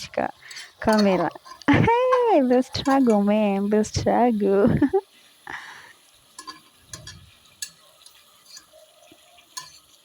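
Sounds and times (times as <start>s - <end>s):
faint frying: 0.0s - 10.0s
utensil scraping a pan: 0.4s - 3.4s, 6.3s - 8.9s, 9.5s - 10.0s.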